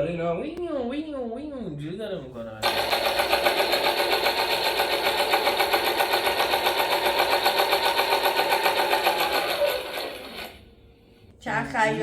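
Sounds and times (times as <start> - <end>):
machine clattering rapidly: 2.6 - 10.5.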